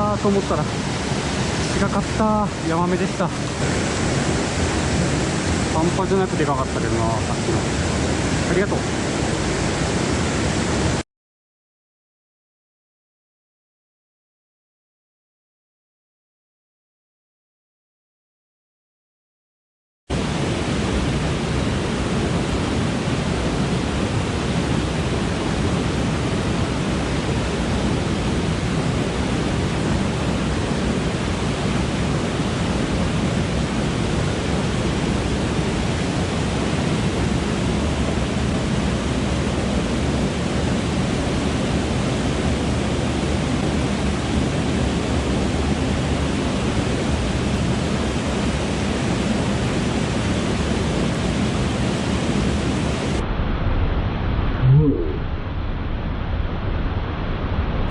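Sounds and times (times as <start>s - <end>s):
stream water rushing: 0.0s - 11.0s.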